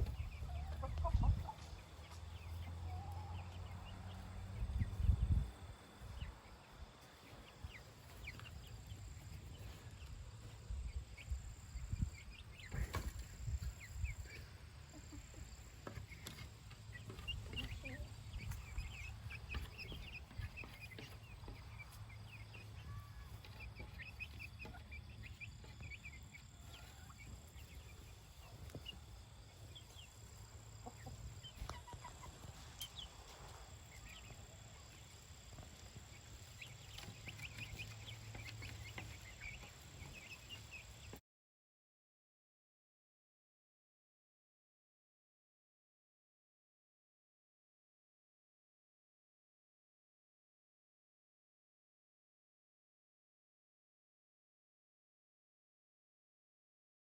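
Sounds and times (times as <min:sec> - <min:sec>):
chickens clucking and chirping: 0:00.0 - 0:41.2.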